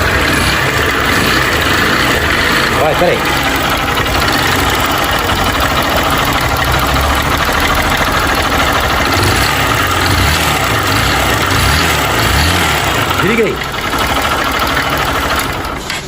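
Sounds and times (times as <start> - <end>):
motorcycle engine idling with clatter: 0.0 - 16.0.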